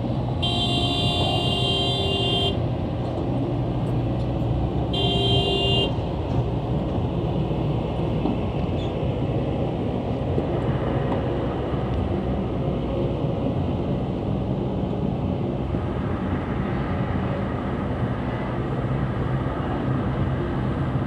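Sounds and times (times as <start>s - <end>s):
heavy diesel engines running: 0.0s - 21.0s
vehicle horn blast: 0.4s - 2.6s, 4.9s - 6.0s.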